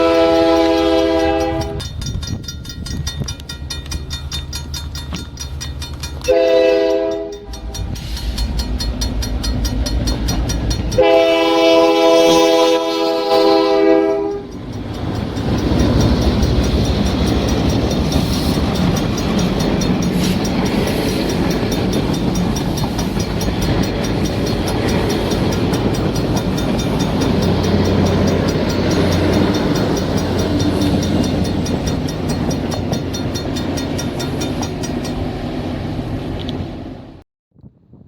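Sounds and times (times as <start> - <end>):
train cars clattering over rails: 0.0 - 35.8
diesel locomotive running: 0.0 - 37.2.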